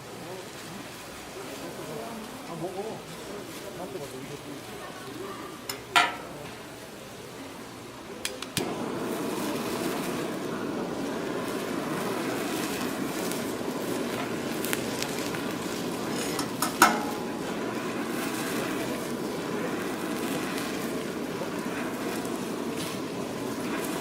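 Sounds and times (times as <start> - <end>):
food sizzling: 1.1 - 24.0
faint clicks: 8.2 - 8.7.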